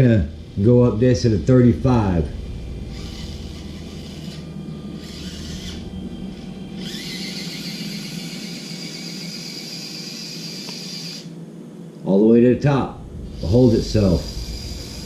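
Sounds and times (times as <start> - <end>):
electric motor and gearbox running: 0.0 - 11.4, 13.3 - 15.0
high steady whine: 0.0 - 15.0.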